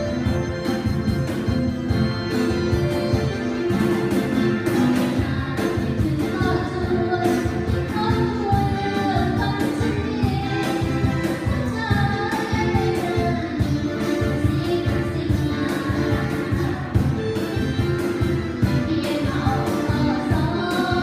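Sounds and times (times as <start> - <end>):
live band playing: 0.0 - 21.0.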